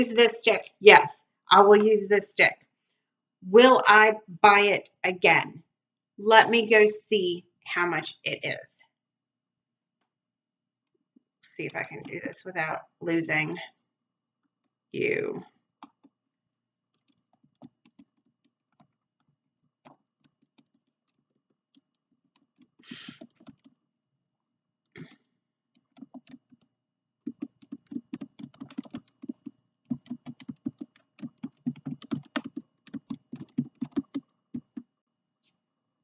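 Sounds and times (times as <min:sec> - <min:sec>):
typing on a keyboard: 0:16.9 - 0:23.8, 0:25.8 - 0:34.9.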